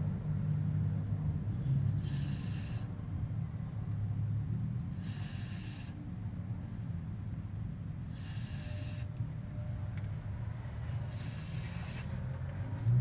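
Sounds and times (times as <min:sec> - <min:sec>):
steady low rumble: 0:12.0 - 0:13.0.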